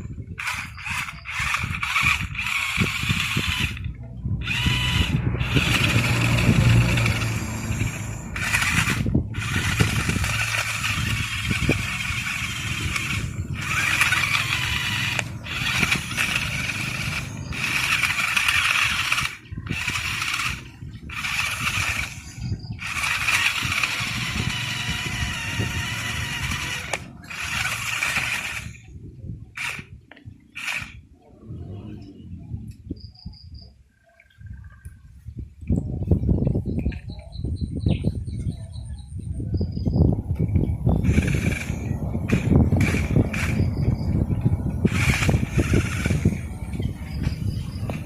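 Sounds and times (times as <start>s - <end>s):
toy motors whining: 0.4s - 29.0s, 29.6s - 31.0s, 41.0s - 44.1s, 44.8s - 46.5s.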